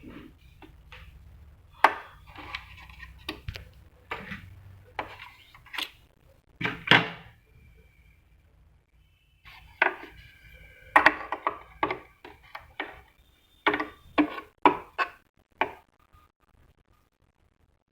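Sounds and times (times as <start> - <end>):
printer parts knocking and clicking: 1.8 - 6.0, 6.6 - 7.3, 9.5 - 15.8.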